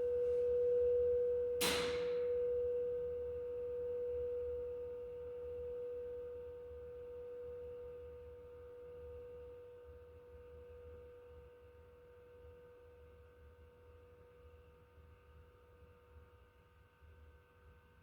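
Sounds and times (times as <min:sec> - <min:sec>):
singing bowl ringing: 0:00.0 - 0:09.3.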